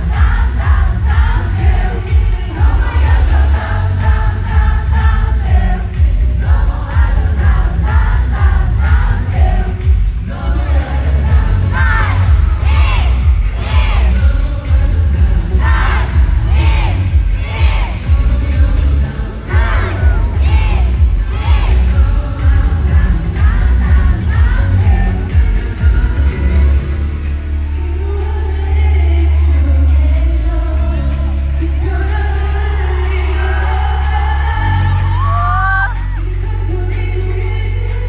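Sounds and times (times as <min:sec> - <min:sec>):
high voices singing: 0:00.0 - 0:38.0
live pop music with heavy bass: 0:00.0 - 0:38.0.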